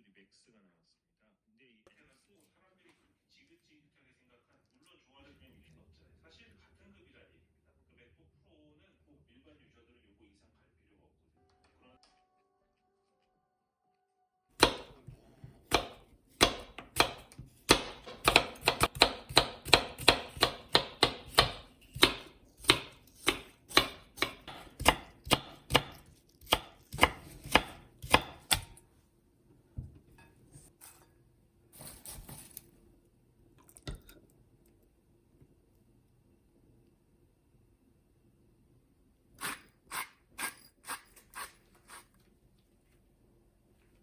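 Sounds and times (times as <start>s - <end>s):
knife chopping on cutting board: 14.6s - 28.8s.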